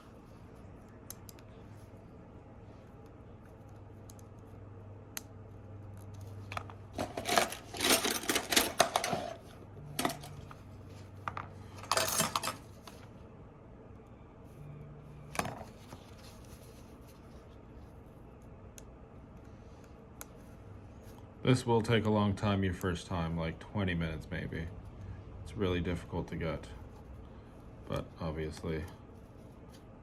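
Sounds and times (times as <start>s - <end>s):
low steady hum: 0.0s - 30.0s
small metal tools clattering: 6.5s - 10.4s, 11.7s - 12.7s.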